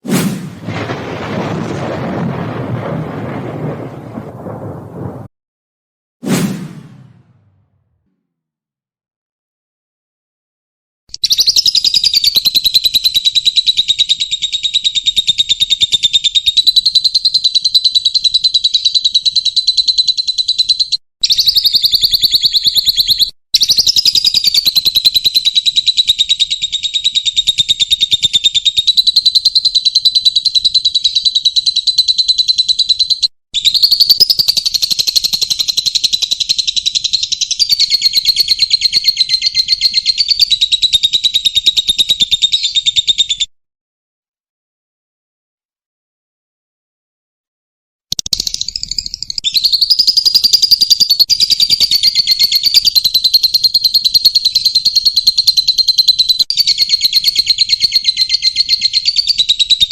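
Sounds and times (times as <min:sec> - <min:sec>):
cage bird chattering song: 0:11.1 - 0:43.5, 0:48.1 - 0:59.9.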